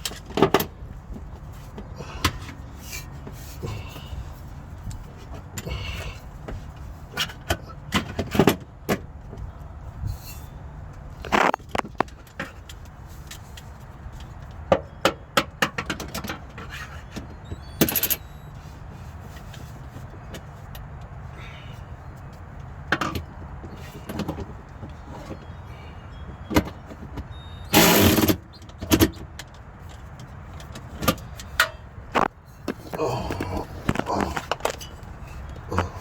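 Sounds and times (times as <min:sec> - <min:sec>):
car interior parts rattling: 0:00.0 - 0:04.2, 0:11.1 - 0:21.2, 0:22.4 - 0:36.0.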